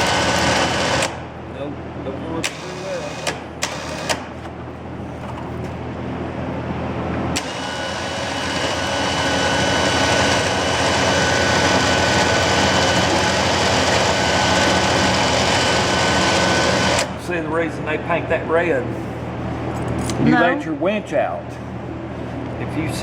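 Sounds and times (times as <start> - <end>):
winch motor whine and gears: 0.0 - 17.7.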